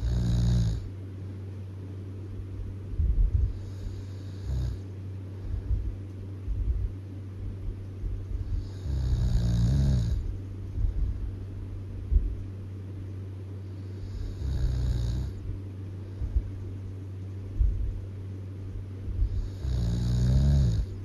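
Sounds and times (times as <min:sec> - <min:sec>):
person snoring: 0:00.0 - 0:00.9, 0:03.5 - 0:04.8, 0:08.5 - 0:10.3, 0:13.8 - 0:15.4, 0:19.2 - 0:20.9
steady low hum: 0:00.0 - 0:21.0.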